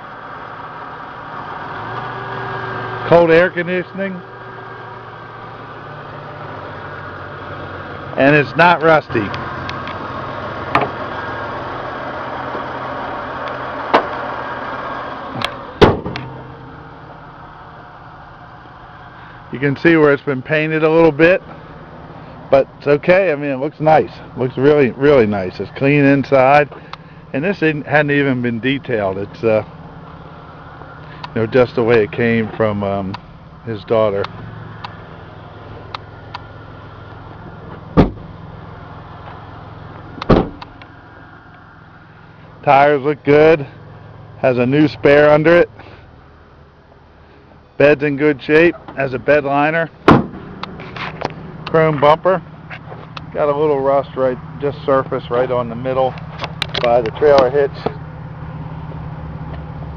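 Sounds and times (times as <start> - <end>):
car engine idling: 0.0 - 59.9
car doors shutting with thumps: 10.7 - 11.1, 13.9 - 14.2, 15.4 - 16.4, 37.3 - 38.4, 39.2 - 40.8, 50.0 - 51.4
loud sharp knock: 50.1 - 50.4.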